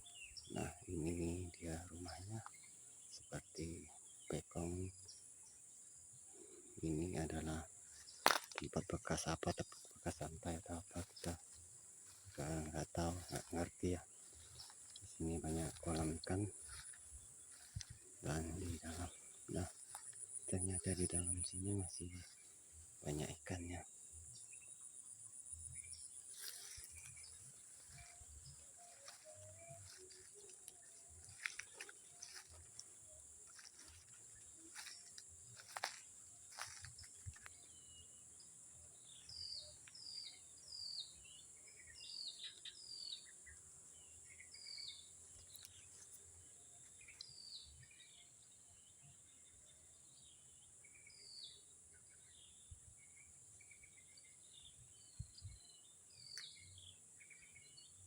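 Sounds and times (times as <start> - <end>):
bird chirping: 0.0 - 58.0
insects trilling: 0.0 - 58.0.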